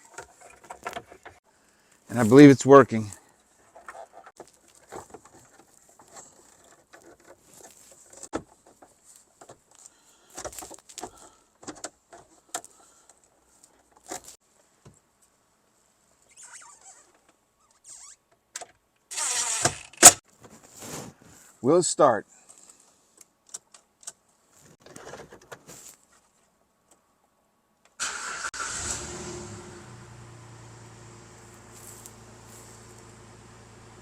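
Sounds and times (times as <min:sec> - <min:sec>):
short rustles: 0:03.6 - 0:11.4, 0:20.3 - 0:21.6.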